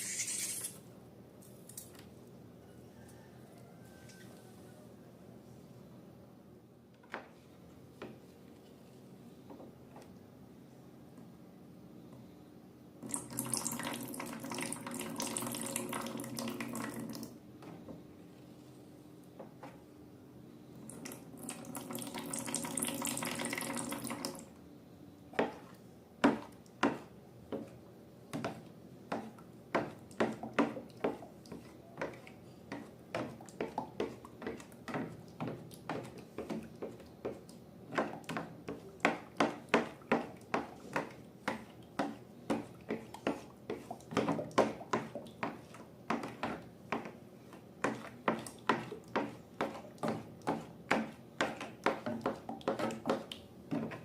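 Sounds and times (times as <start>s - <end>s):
liquid pouring into a container: 13.0s - 17.3s.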